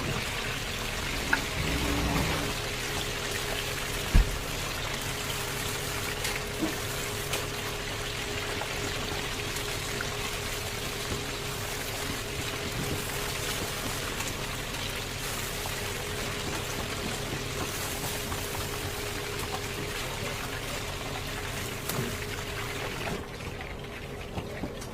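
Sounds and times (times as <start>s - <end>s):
chicken sizzling in hot oil: 0.0s - 23.3s.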